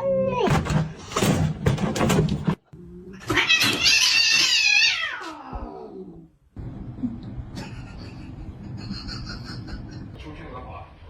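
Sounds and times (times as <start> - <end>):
cat meowing: 3.1 - 6.0.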